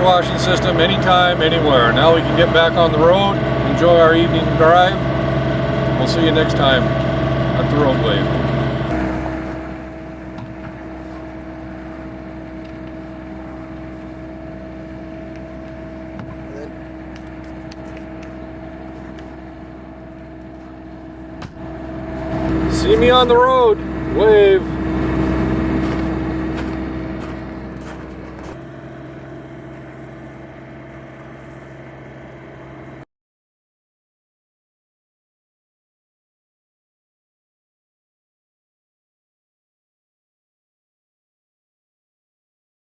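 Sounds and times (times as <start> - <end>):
engine running: 0.0 - 33.1.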